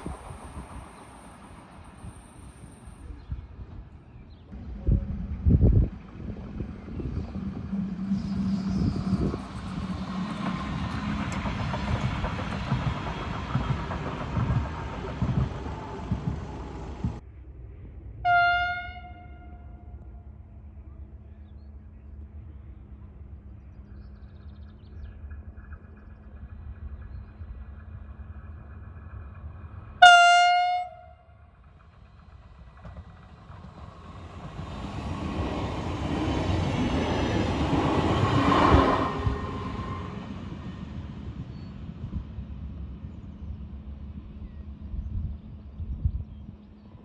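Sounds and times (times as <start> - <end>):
electric train passing by: 0.0 - 47.0
train horn blast: 18.2 - 20.0, 30.0 - 31.4.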